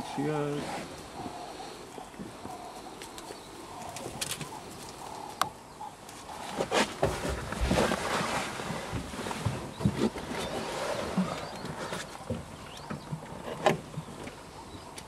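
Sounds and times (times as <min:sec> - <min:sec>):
soft cooing calls: 0:00.0 - 0:06.8, 0:09.6 - 0:15.0
rustling: 0:06.1 - 0:14.4.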